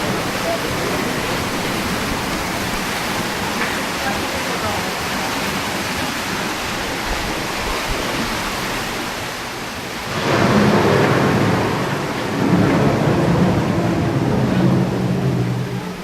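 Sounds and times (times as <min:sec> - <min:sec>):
thunder rumbling: 0:00.0 - 0:04.3, 0:09.8 - 0:16.0
rain hissing: 0:00.0 - 0:16.0.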